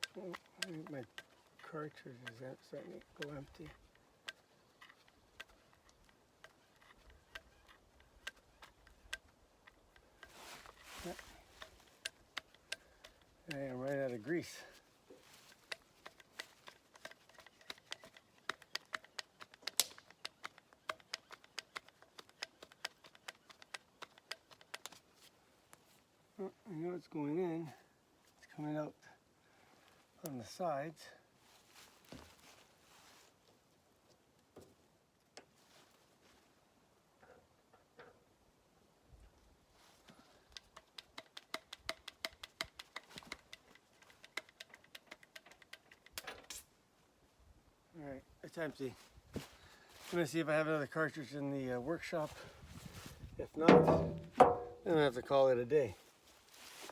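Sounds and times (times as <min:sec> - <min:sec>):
grease gun clicking: 0:00.0 - 0:10.3, 0:11.6 - 0:13.7, 0:15.6 - 0:25.0, 0:40.5 - 0:46.6.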